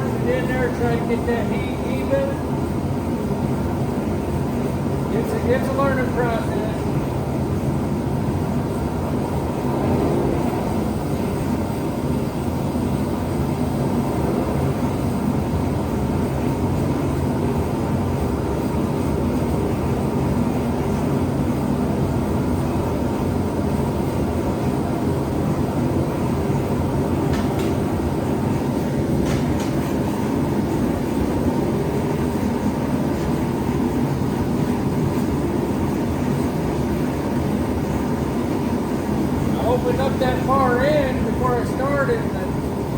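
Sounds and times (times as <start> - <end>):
gas burners roaring: 0.0 - 42.9.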